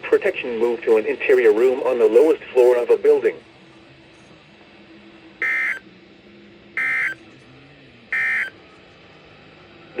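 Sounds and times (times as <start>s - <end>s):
buzzy electronic squawks: 5.4s - 5.8s, 6.8s - 7.2s, 8.1s - 8.6s.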